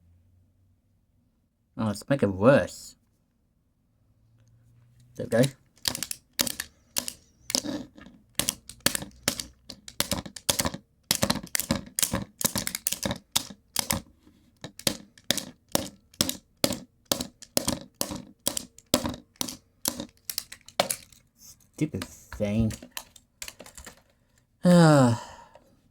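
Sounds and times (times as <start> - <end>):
plastic remote control being struck: 5.4 - 21.1.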